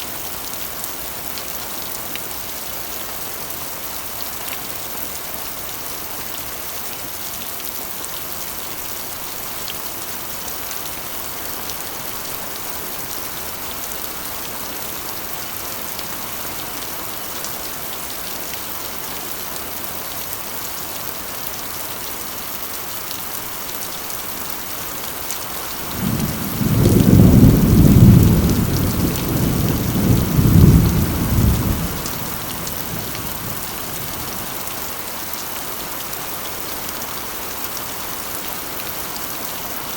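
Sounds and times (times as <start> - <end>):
rain drumming on a metal roof: 0.0 - 39.9
low rumble of thunder: 25.8 - 34.4.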